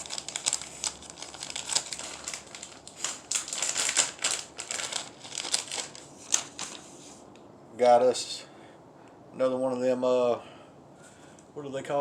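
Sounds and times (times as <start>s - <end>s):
plastic packaging crinkling: 0.0s - 7.1s.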